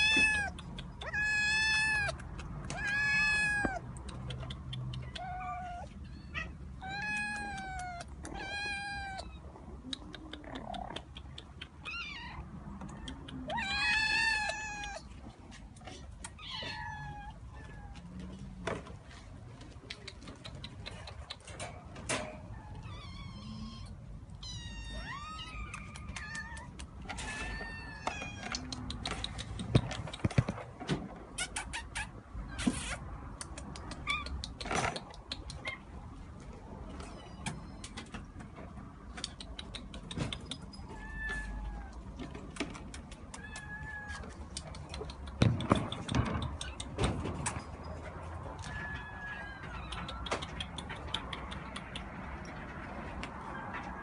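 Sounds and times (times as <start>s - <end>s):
cat meowing: 0.0s - 3.9s, 5.0s - 9.5s, 11.8s - 15.1s, 22.7s - 28.6s, 40.8s - 42.0s, 43.3s - 44.4s
faint clicks: 49.6s - 54.0s.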